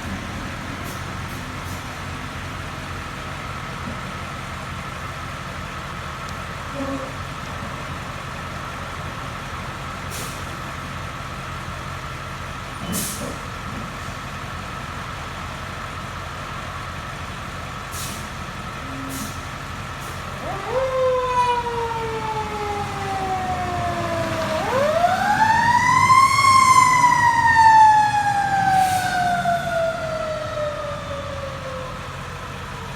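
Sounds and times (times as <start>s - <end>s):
fire truck engine idling: 0.0s - 32.9s
siren winding up and falling: 20.4s - 32.1s.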